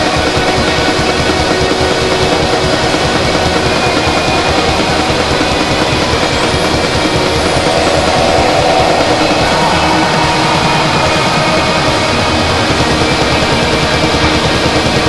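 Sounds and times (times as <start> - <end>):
dense noise drone: 3.1 - 14.6
faint high sweep: 4.3 - 14.2.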